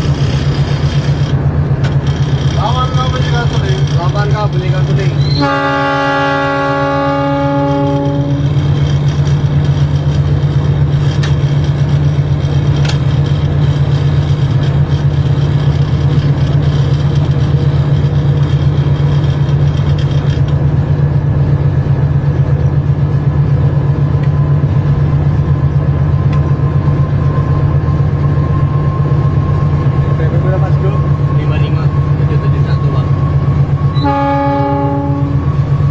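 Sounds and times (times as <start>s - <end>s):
locomotive engine drone: 0.0s - 35.9s
train horn chord: 5.3s - 8.6s, 33.9s - 35.5s.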